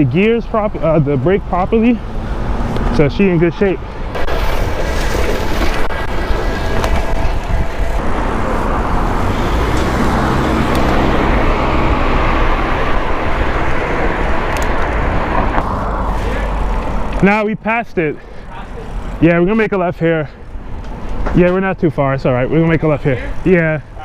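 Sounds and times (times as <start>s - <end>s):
passing road traffic: 0.0s - 24.0s
low engine hum: 4.1s - 17.2s.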